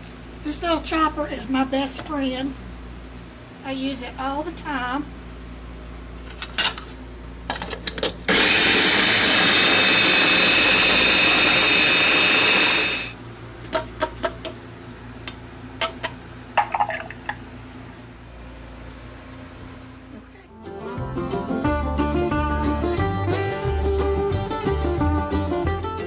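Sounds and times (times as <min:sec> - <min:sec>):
electric food chopper running: 0:08.3 - 0:13.2.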